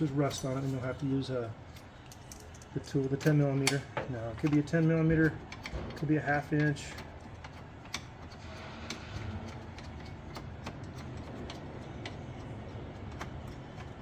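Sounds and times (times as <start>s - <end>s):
steady low hum: 0.0s - 14.0s
socket wrench clicking: 6.6s - 14.0s.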